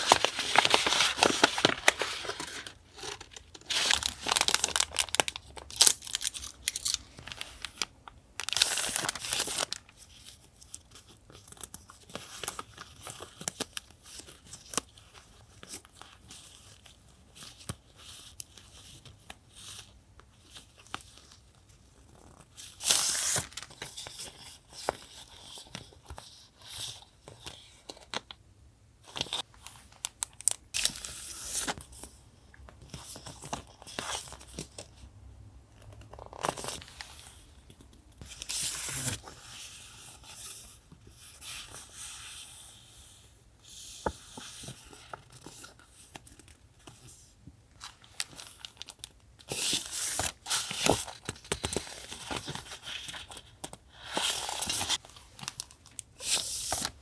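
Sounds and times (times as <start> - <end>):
paper tearing: 0.0 - 5.1
paper crinkling: 0.0 - 16.6.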